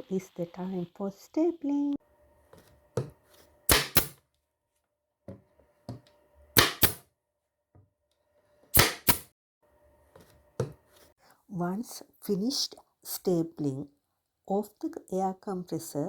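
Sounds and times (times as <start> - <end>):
air stapler firing: 3.7 - 4.2, 6.6 - 7.0, 8.8 - 9.3.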